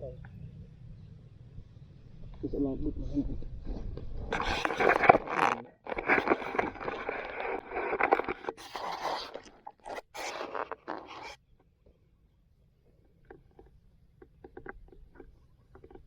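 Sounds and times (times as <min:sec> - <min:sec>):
rough scraping: 0:04.3 - 0:11.4.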